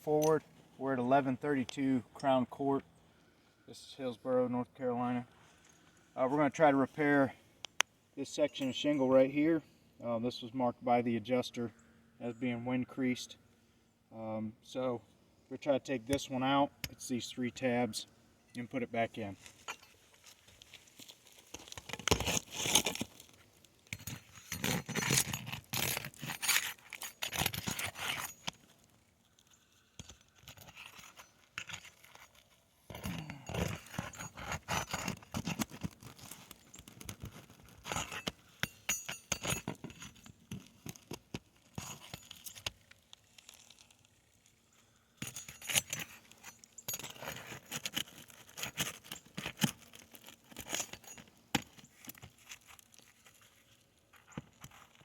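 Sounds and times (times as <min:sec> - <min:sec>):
shingles tearing: 0:19.5 - 0:23.5, 0:24.2 - 0:28.9, 0:30.1 - 0:38.6, 0:39.5 - 0:44.5, 0:45.4 - 0:55.0
shingles scraping: 0:24.2 - 0:28.6, 0:45.3 - 0:55.0.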